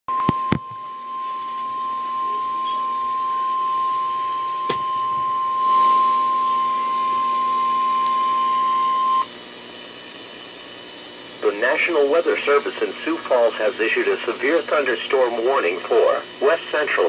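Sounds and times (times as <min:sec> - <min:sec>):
steady alarm tone: 0:00.1 - 0:09.4.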